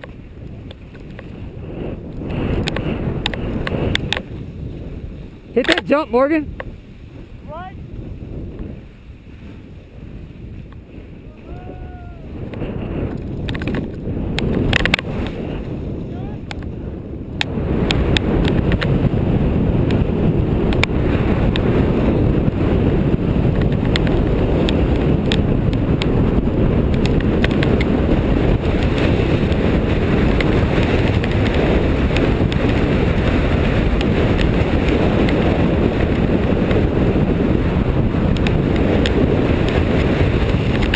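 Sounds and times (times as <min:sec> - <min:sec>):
small clicks and ticks: 0:00.0 - 0:01.4, 0:02.1 - 0:04.3, 0:12.5 - 0:15.4, 0:16.4 - 0:16.8, 0:17.4 - 0:18.9, 0:20.7 - 0:21.7, 0:23.5 - 0:26.1, 0:26.9 - 0:27.9, 0:30.3 - 0:32.8, 0:38.3 - 0:39.9, 0:40.6 - 0:40.9
wind buffeting microphone: 0:00.0 - 0:40.9.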